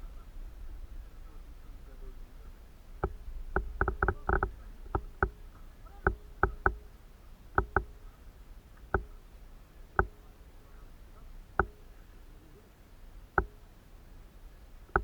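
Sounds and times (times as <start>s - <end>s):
sharp ringing clicks: 7.6s - 8.0s, 11.6s - 11.9s, 13.4s - 13.7s.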